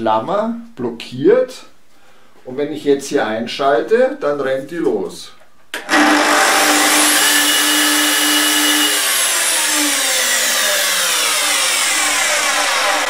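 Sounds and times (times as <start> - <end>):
circular saw whirring whine: 5.9 - 13.0.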